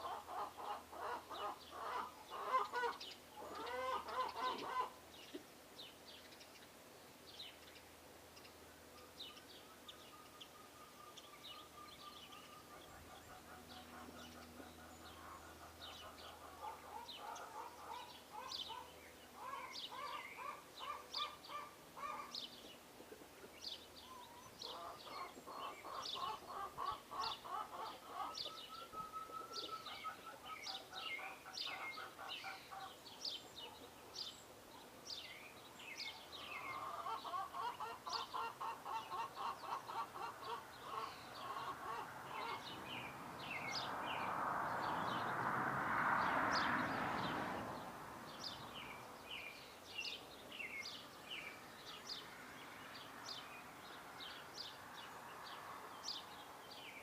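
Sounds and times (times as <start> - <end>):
birds trilling: 0.0 - 5.1, 9.7 - 22.6, 23.6 - 33.9, 36.0 - 44.3
birds chirping: 0.0 - 57.0.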